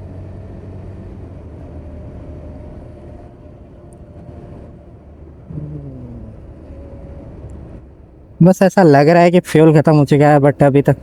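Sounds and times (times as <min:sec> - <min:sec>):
road and wind noise: 0:00.0 - 0:11.0
motorcycle engine running: 0:04.8 - 0:08.4.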